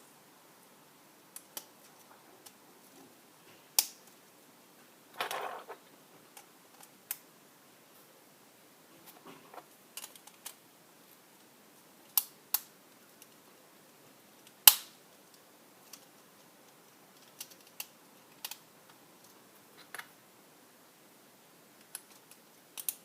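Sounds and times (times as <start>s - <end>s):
plastic parts clicking together: 10.0s - 10.6s, 17.2s - 18.6s, 21.8s - 23.0s.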